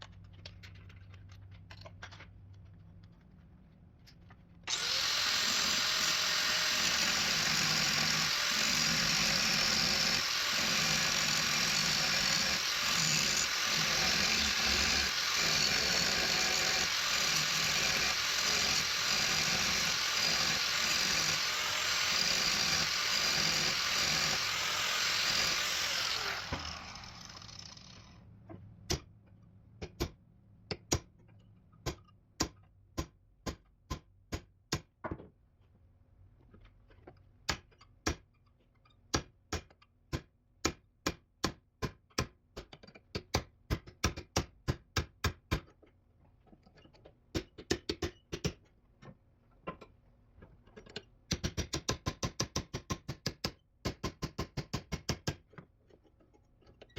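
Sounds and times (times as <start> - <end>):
cutting tool winding down: 4.7 - 28.2.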